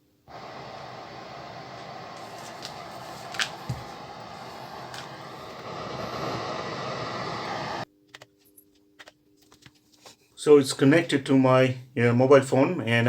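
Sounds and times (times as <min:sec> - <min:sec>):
static hiss from speakers: 0:00.0 - 0:07.9
low hum: 0:00.3 - 0:07.9.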